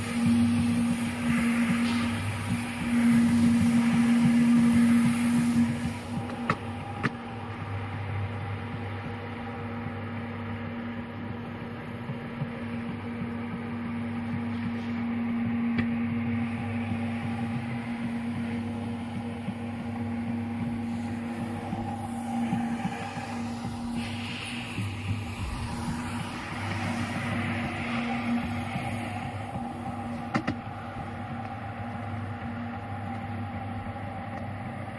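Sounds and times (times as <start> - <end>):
machine motor humming: 12.1 - 34.3.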